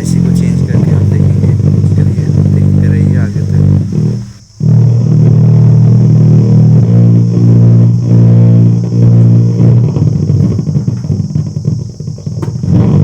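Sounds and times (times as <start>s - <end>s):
heavy bass music from subwoofer: 0.0s - 13.0s.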